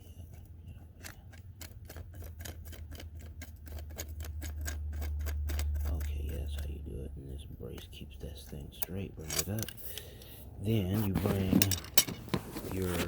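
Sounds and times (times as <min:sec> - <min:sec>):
metal rods clicking together: 0:08.7 - 0:10.0.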